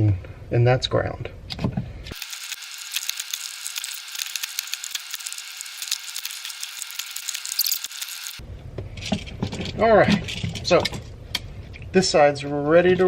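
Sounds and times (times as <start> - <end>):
hand tools clicking and ratcheting: 2.1 - 8.4.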